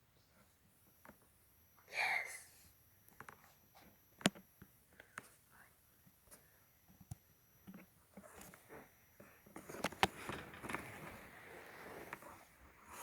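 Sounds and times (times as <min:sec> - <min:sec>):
soft rustling: 0:08.0 - 0:13.0.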